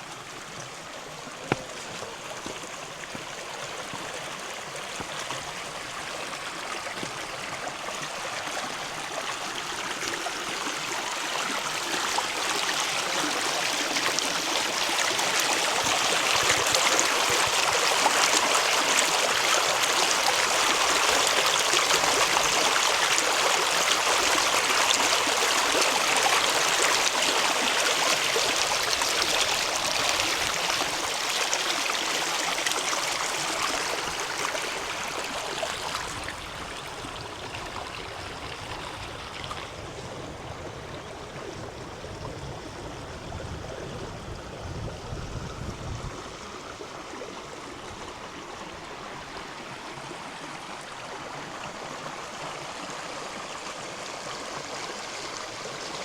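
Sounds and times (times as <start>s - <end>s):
river water rushing over rocks: 0.0s - 40.3s.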